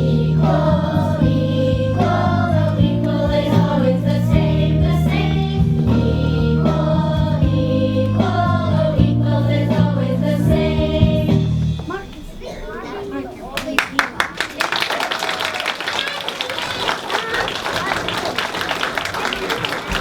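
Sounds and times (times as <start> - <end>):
children singing: 0.0 - 11.5
instrumental accompaniment: 0.0 - 12.2.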